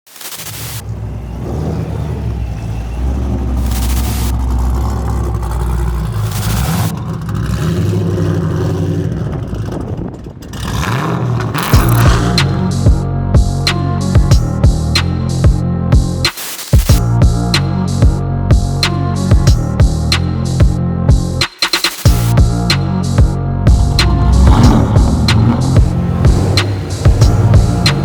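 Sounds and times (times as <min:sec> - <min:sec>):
car engine revving: 0:00.4 - 0:13.1, 0:22.2 - 0:28.0.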